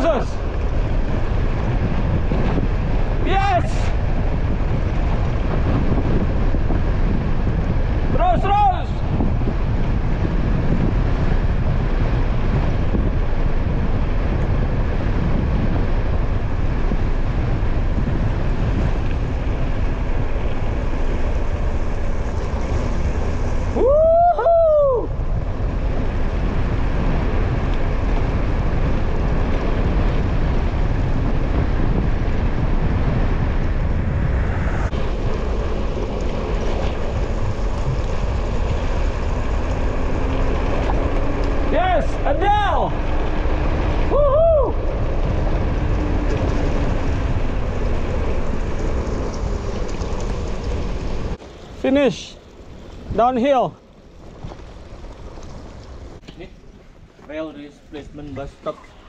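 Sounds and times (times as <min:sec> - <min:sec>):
wind buffeting microphone: 0:00.0 - 0:59.0
person whooping shout: 0:23.8 - 0:25.2, 0:44.1 - 0:44.8.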